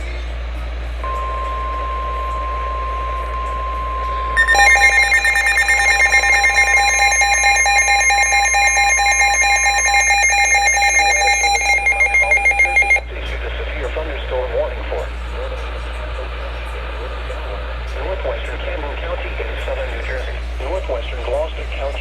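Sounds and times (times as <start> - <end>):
steady high alarm beep: 1.1 - 13.0
rapid warbling alarm beep: 4.4 - 13.0.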